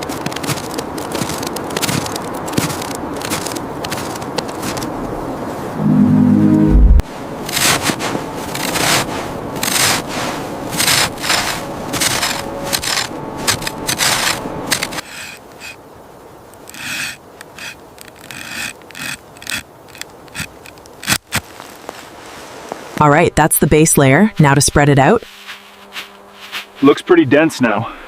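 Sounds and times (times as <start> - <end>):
rough scraping strokes: 5.8 - 15.8, 25.3 - 27.1.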